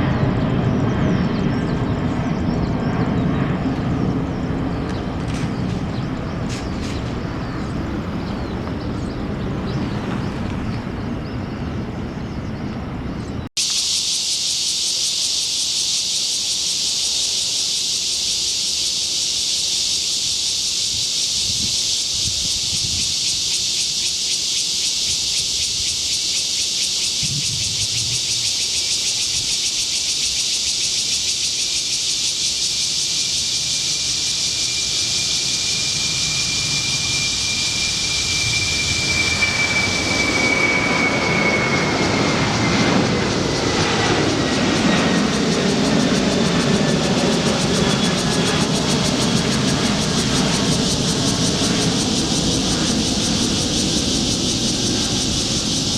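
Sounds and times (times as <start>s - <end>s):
jet airliner whine: 0.0s - 55.9s
low engine rumble: 1.5s - 13.5s
steady high-pitched hiss: 13.6s - 39.1s, 47.8s - 55.9s.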